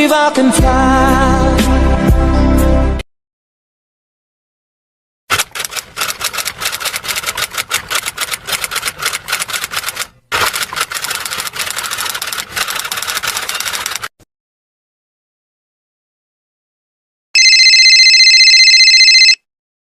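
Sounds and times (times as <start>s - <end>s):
keyboard typing clatter: 5.3s - 14.1s.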